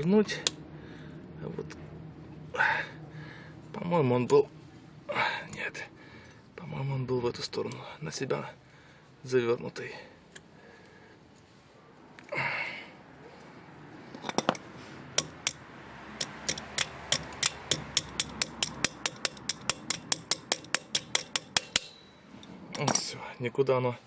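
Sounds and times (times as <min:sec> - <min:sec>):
sharp metallic clicks of hand tool: 0:15.2 - 0:15.6, 0:16.2 - 0:22.1.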